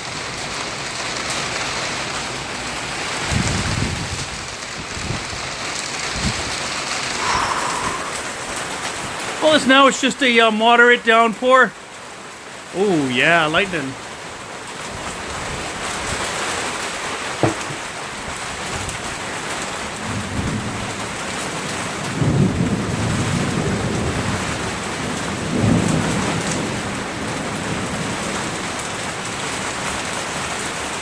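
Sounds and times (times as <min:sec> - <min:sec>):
heavy rain hissing: 0:00.2 - 0:11.7, 0:12.3 - 0:14.0.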